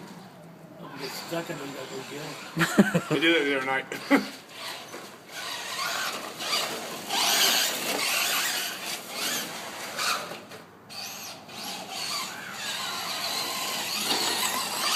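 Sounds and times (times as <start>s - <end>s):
radio-controlled car motors whining: 0.9s - 2.6s, 3.2s - 14.9s
rush of driving noise: 4.4s - 14.9s.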